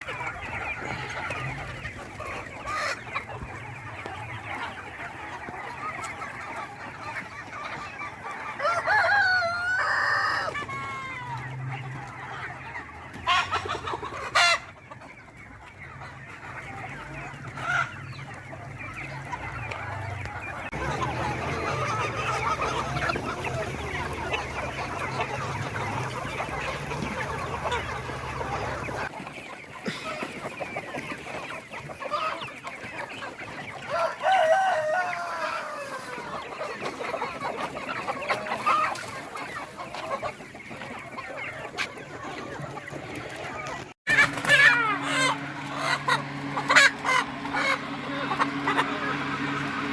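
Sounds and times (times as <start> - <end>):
chickens clucking: 0.0 - 49.9
rooster crowing: 8.6 - 11.2, 33.8 - 36.1.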